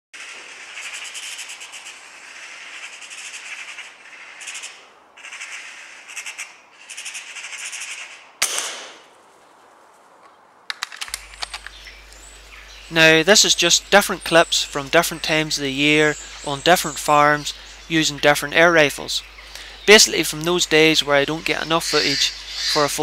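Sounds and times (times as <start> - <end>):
air rifle shot: 8.4 - 9.1
faint clicks: 10.2 - 12.3.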